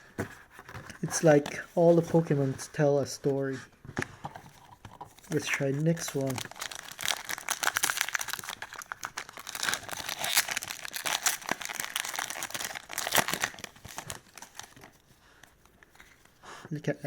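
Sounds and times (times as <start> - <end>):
foil wrapper crinkling and tearing: 5.3 - 14.9.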